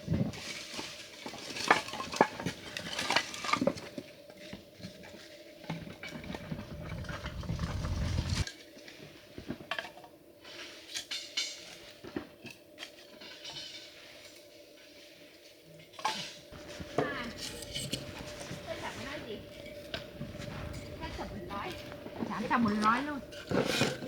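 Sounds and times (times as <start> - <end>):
low rumble: 6.2 - 8.4, 16.6 - 23.4.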